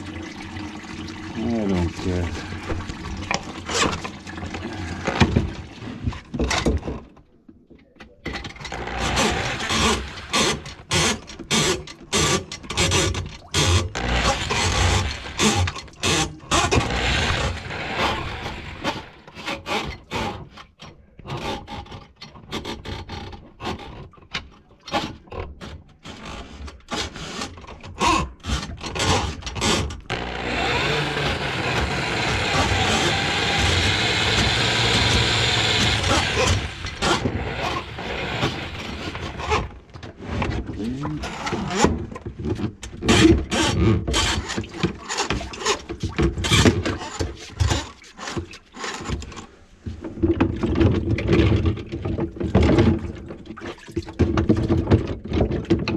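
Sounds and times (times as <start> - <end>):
plumbing tools knocking and scraping: 8.0 - 20.5, 24.9 - 55.9
mechanical running noise: 8.7 - 10.6, 13.9 - 15.7, 16.5 - 19.2, 30.1 - 39.7.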